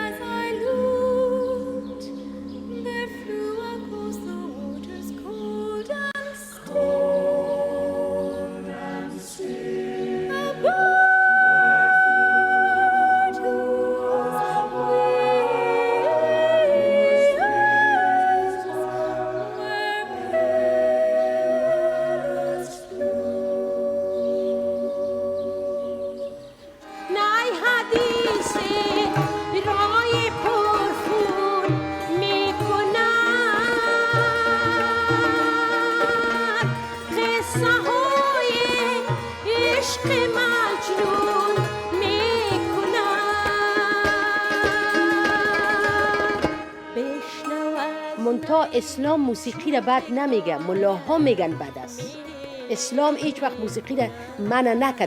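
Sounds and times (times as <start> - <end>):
voices singing long notes: 0.0 - 43.7.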